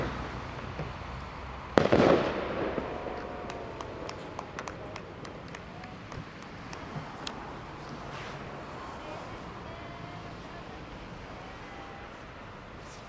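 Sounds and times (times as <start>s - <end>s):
crackling firework pops: 1.7s - 9.0s
firework bang: 1.8s - 9.3s.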